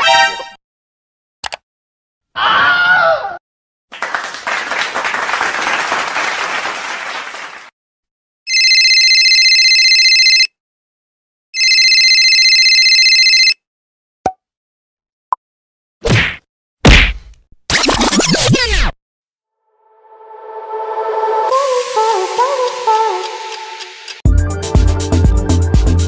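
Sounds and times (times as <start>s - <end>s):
short clicks: 1.4s - 1.6s
applause: 3.9s - 7.7s
telephone bell ringing: 8.5s - 10.6s, 11.6s - 13.6s.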